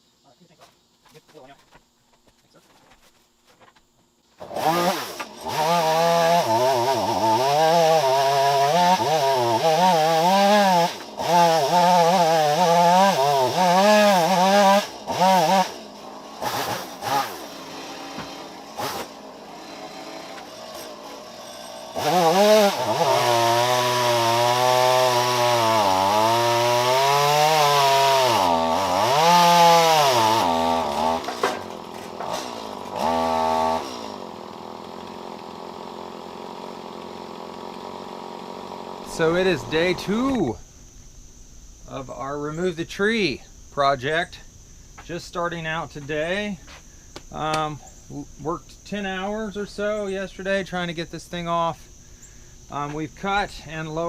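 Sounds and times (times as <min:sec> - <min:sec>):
chainsaw running at high revs: 0:04.4 - 0:40.6.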